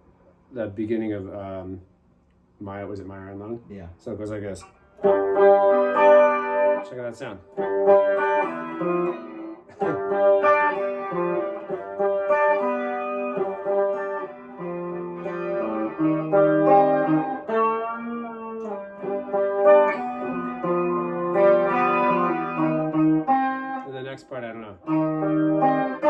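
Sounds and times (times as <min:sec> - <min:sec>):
electric guitar riff with effects: 0:04.5 - 0:26.0.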